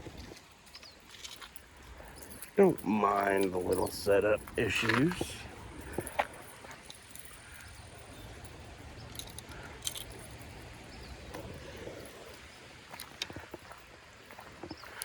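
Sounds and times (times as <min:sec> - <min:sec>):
outdoor background noise: 0:00.0 - 0:15.0
fishing gear clicking: 0:00.6 - 0:10.7.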